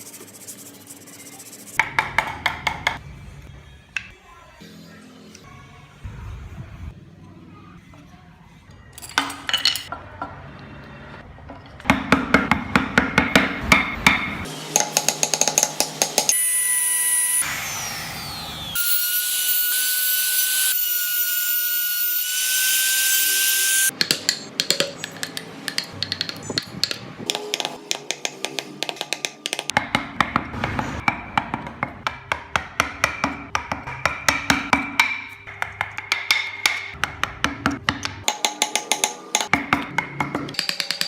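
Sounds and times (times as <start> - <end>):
small power tool whining: 16.3 - 23.9.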